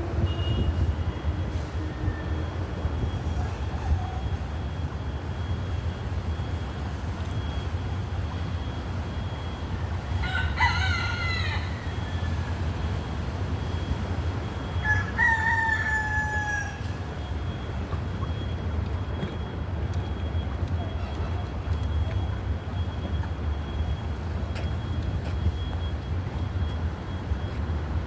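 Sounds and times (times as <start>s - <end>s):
low traffic rumble: 0.0s - 28.0s
rooster crowing: 10.2s - 12.2s, 14.8s - 17.0s.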